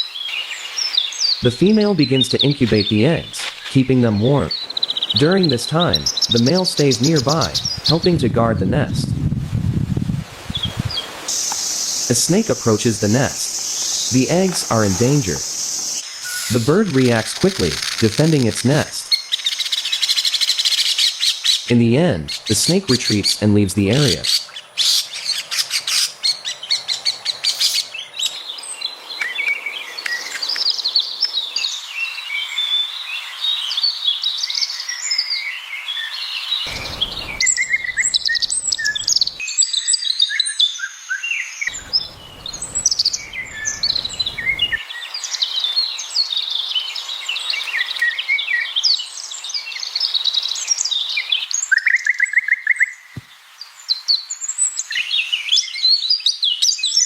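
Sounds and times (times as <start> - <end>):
small birds chirping and singing: 0.0 - 9.0, 10.5 - 40.0, 40.8 - 57.0
low rumble: 36.7 - 39.4, 41.7 - 44.8.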